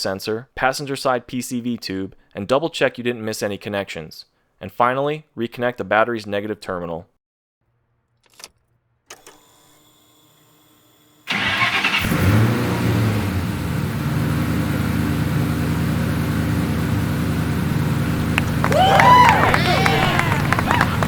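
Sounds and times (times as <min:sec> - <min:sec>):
car engine starting and idling: 0:11.3 - 0:21.0
faint hum: 0:17.5 - 0:21.0.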